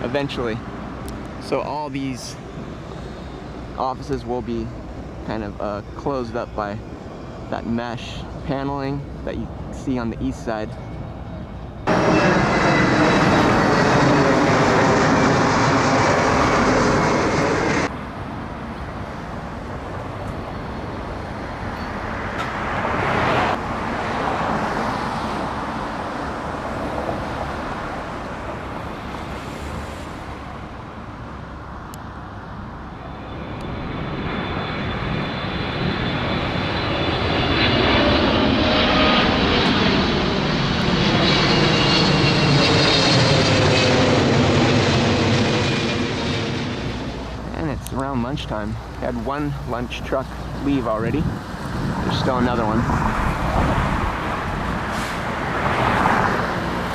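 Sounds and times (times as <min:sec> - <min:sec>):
high whining engine tones: 0:00.0 - 0:18.0, 0:32.6 - 0:56.9
jet aircraft passing overhead: 0:00.0 - 0:56.9.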